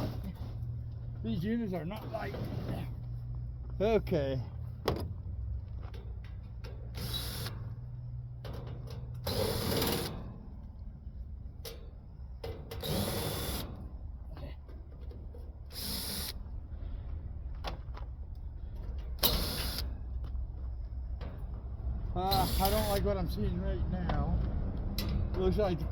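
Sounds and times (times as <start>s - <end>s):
cordless drill removing screws: 6.9s - 7.8s, 8.8s - 10.2s, 12.6s - 13.8s, 15.7s - 16.4s, 19.2s - 19.9s, 22.3s - 23.0s.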